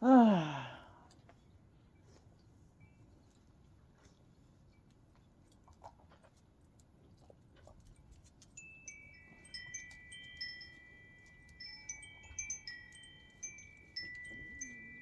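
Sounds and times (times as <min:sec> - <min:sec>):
wind chimes ringing: 0:08.6 - 0:15.0.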